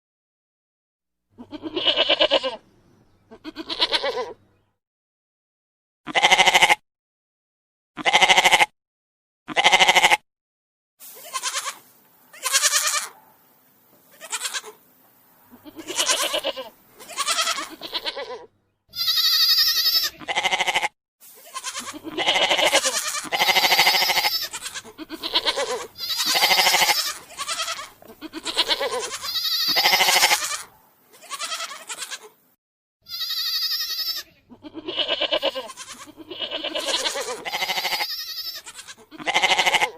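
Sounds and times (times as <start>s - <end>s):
goats bleating: 1.4s - 2.6s, 3.3s - 4.4s, 6.1s - 6.8s, 8.0s - 8.7s, 9.5s - 10.2s, 11.2s - 13.2s, 14.1s - 14.8s, 15.5s - 32.4s, 33.0s - 39.9s.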